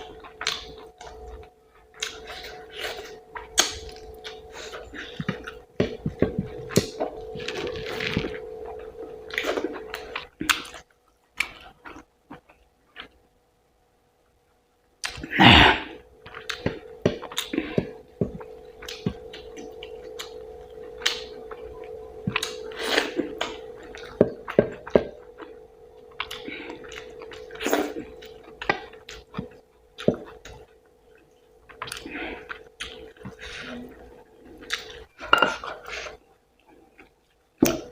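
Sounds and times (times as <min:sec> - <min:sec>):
steady low hum: 0:00.0 - 0:37.9
chewing and wet mouth sounds: 0:16.2 - 0:37.9.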